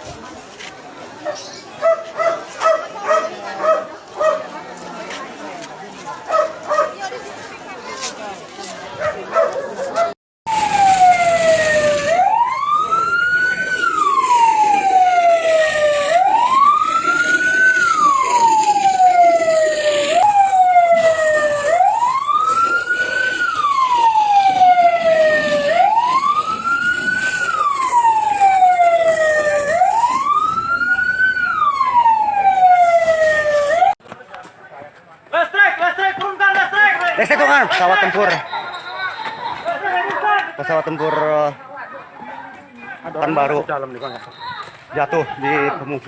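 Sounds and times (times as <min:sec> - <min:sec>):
siren wailing: 0:10.5 - 0:34.0.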